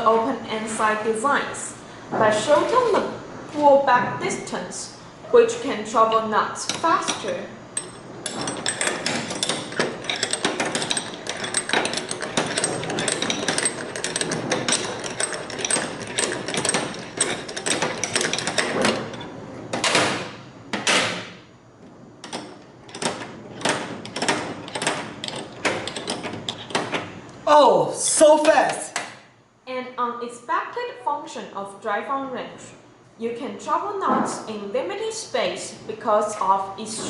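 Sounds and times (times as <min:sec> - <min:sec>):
wrench scraping: 0:06.7 - 0:19.4, 0:22.2 - 0:27.0.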